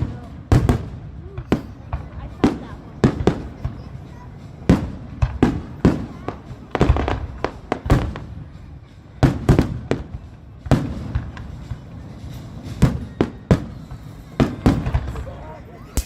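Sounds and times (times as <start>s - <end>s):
fireworks booming: 0.0s - 16.0s.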